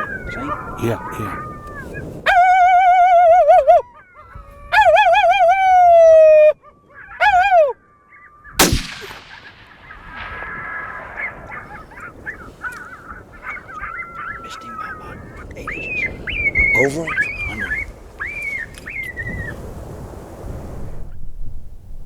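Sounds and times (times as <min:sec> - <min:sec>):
rifle shot: 0:08.6 - 0:12.4
predator call coyote howls: 0:09.8 - 0:18.4.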